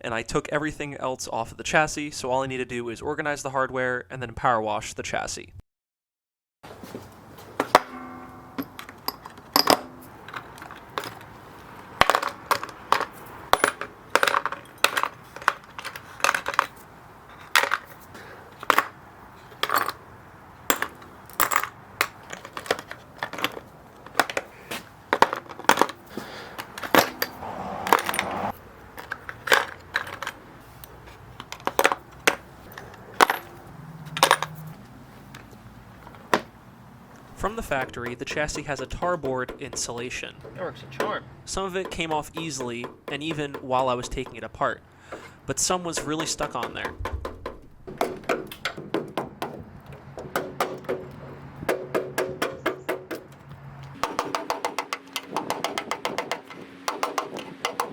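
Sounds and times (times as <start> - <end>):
metal bolts and nuts clinking: 7.0 - 36.5.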